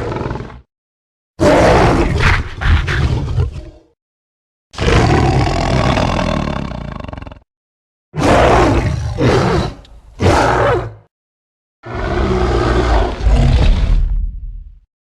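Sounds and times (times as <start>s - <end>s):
creature roaring: 1.4s - 4.0s, 4.8s - 7.4s, 8.2s - 11.0s, 11.8s - 14.2s.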